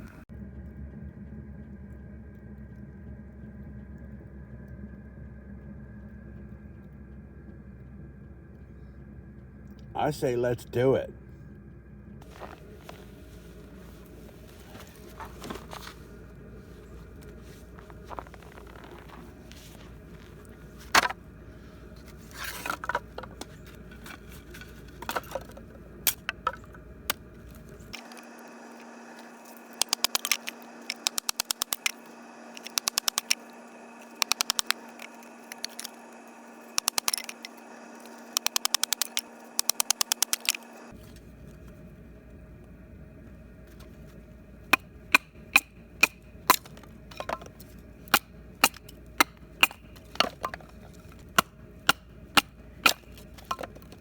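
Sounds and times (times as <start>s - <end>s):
firewood cracking and knocking: 16.8s - 21.2s, 22.0s - 37.5s, 44.8s - 54.0s
rapid clicking: 29.7s - 36.0s, 36.6s - 40.9s.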